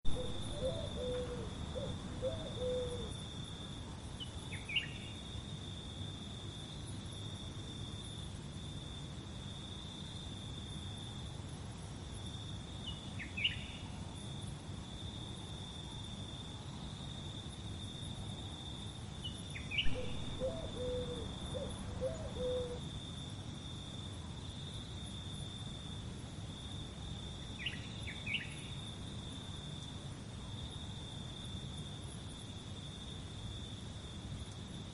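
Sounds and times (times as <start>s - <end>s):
insects trilling: 0.1s - 34.9s
bird chirps: 19.3s - 22.8s.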